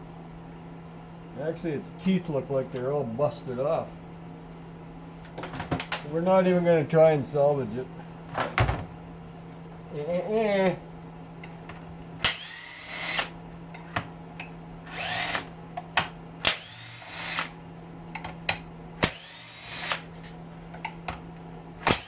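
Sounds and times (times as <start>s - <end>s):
cordless drill whirring: 12.2s - 13.4s, 14.8s - 15.6s, 16.4s - 17.6s, 19.0s - 20.3s.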